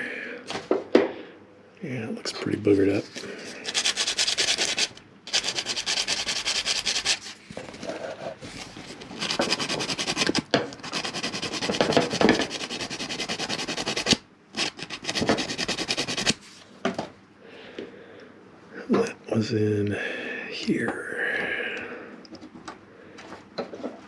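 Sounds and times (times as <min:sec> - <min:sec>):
sandpaper scrubbing metal contact: 0:03.4 - 0:16.6.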